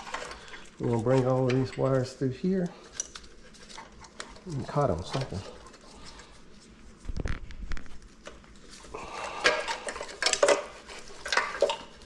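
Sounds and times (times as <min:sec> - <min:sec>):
wiring connectors clattering on metal: 0:00.0 - 0:05.8.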